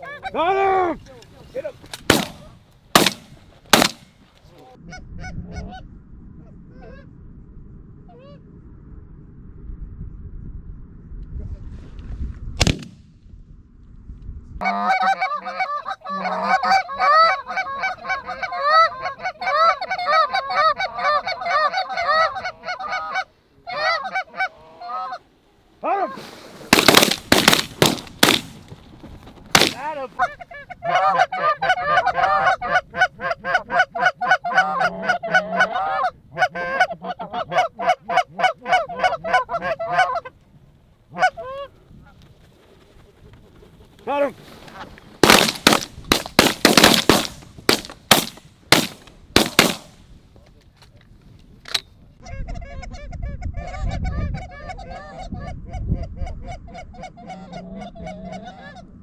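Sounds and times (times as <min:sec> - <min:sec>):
shotgun blasts: 0:01.9 - 0:04.2, 0:12.6 - 0:13.1, 0:26.6 - 0:28.8, 0:29.6 - 0:29.9, 0:45.2 - 0:50.0
geese honking: 0:14.6 - 0:25.2.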